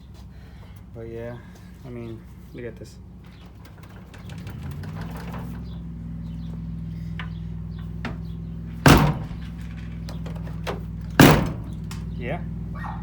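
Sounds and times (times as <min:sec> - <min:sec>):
engine idling: 0:00.0 - 0:13.0
loud thump: 0:08.9 - 0:09.7, 0:11.2 - 0:11.9.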